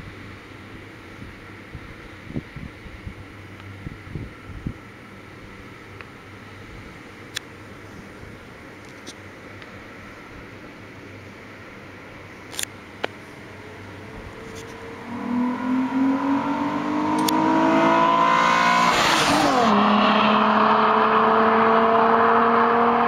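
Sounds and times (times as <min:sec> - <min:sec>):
car engine accelerating: 0:13.3 - 0:23.0
short clicks: 0:17.2 - 0:17.4.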